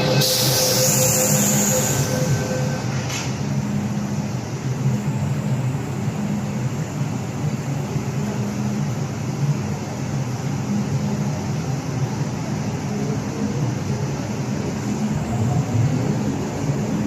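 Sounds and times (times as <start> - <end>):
high hiss: 0.0 - 3.1
tonal whine: 0.0 - 9.6
train rumble and hum: 0.0 - 17.0.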